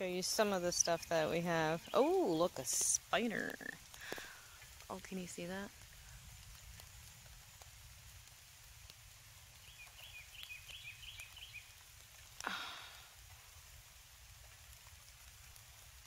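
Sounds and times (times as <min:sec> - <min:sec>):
light rain: 0:00.0 - 0:16.0
bird chirping: 0:09.6 - 0:11.8.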